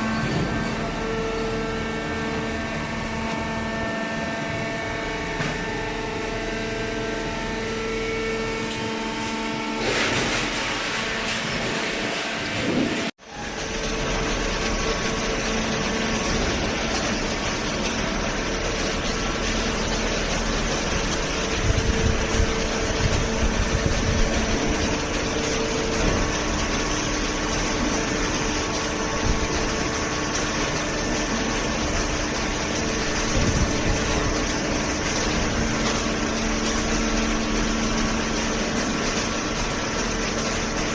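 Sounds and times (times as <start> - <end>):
baler motor humming: 0.0 - 40.9.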